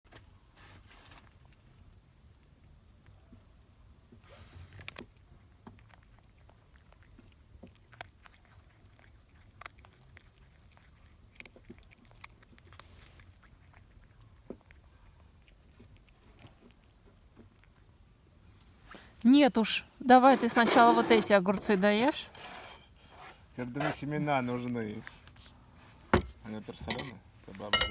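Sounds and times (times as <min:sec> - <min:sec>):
cat chewing cucumber crunches: 0:04.0 - 0:19.2.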